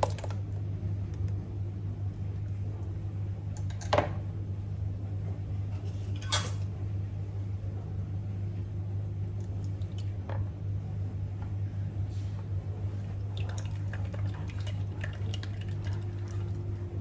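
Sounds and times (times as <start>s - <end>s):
steady low hum: 0.0s - 17.0s
kitchenware clinking: 6.0s - 6.7s.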